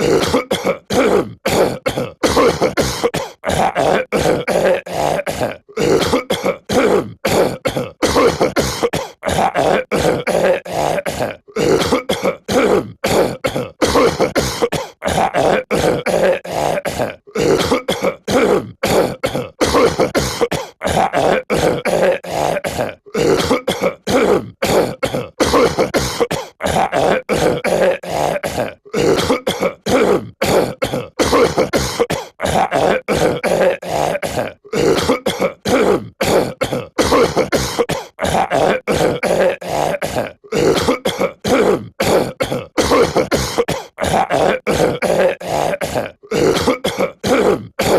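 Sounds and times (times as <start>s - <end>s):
man coughing and clearing throat: 0.0s - 47.9s.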